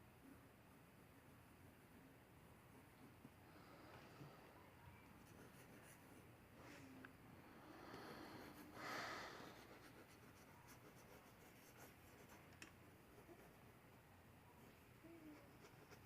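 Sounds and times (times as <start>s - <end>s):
pencil scratching on paper: 5.2s - 6.2s, 9.4s - 12.4s, 15.3s - 16.0s.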